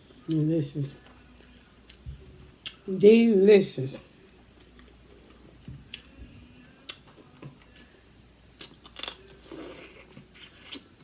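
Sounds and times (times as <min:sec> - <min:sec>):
chewing: 0:08.6 - 0:11.0.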